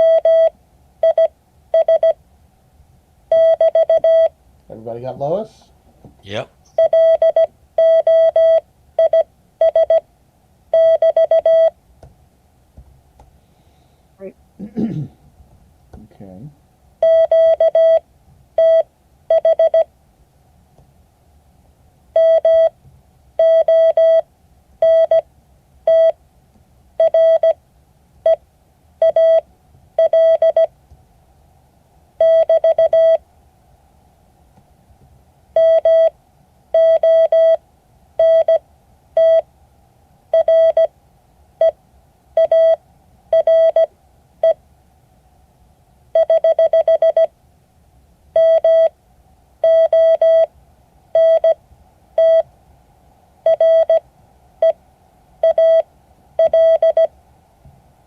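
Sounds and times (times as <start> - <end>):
morse code beeps: 0.0 - 2.2, 3.3 - 4.3, 6.8 - 10.0, 10.8 - 11.7, 17.0 - 18.0, 18.6 - 19.9, 22.2 - 22.7, 23.4 - 24.2, 24.8 - 25.2, 25.9 - 26.2, 27.0 - 27.6, 29.0 - 29.4, 30.0 - 30.7, 32.2 - 33.2, 35.6 - 36.1, 36.8 - 37.6, 38.2 - 38.6, 39.2 - 39.4, 40.4 - 40.9, 42.4 - 42.8, 43.4 - 44.6, 46.2 - 47.3, 48.4 - 48.9, 49.6 - 50.5, 51.2 - 51.6, 52.2 - 52.4, 53.5 - 54.0, 55.4 - 55.8, 56.4 - 57.1.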